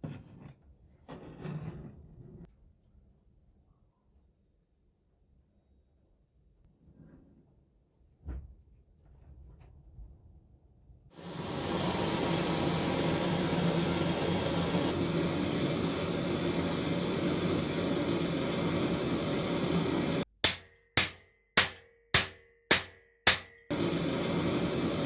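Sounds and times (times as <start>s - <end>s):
hammer blows on steel: 20.4s - 23.8s.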